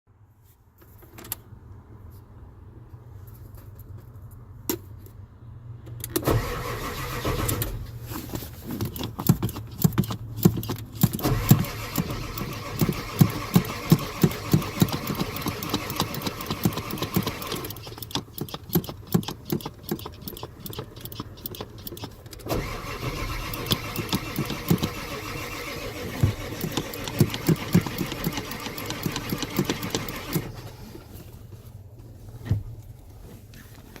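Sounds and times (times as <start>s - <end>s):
diesel engine cranking: 6.0s - 30.9s.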